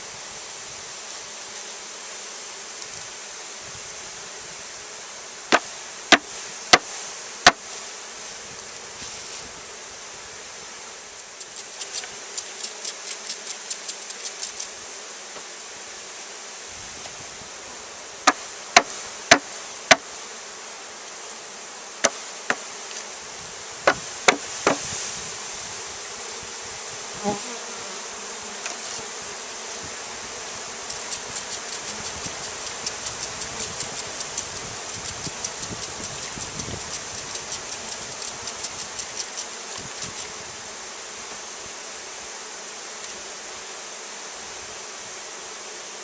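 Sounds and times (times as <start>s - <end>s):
bees buzzing: 0.0s - 46.0s
sharp knocks on wood: 18.3s - 20.0s, 23.8s - 24.8s.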